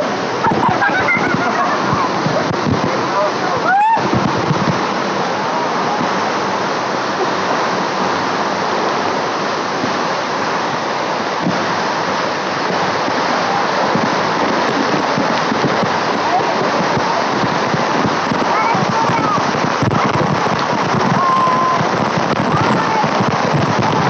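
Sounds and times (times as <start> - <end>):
waterfall rushing: 0.0 - 24.0.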